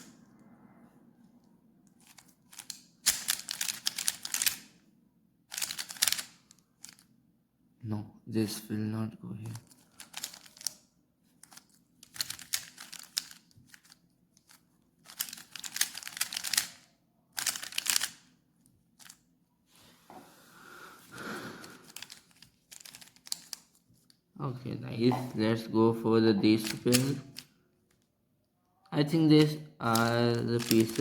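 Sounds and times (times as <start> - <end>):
plastic cube clicking and clacking: 2.0 - 4.7, 5.5 - 7.0, 9.5 - 10.8, 11.4 - 18.3, 21.8 - 23.7, 26.6 - 27.5, 29.8 - 31.0.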